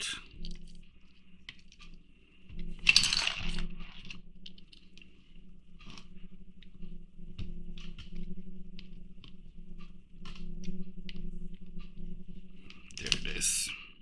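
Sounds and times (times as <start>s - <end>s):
low steady hum: 0.0s - 14.0s
metal toy parts clinking: 2.8s - 4.1s.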